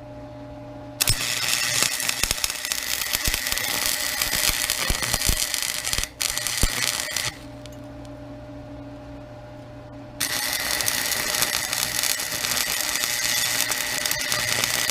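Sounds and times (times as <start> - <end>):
steady electrical hum: 0.0 - 14.9
welding arc crackling and sizzling: 1.0 - 7.8, 10.2 - 14.9.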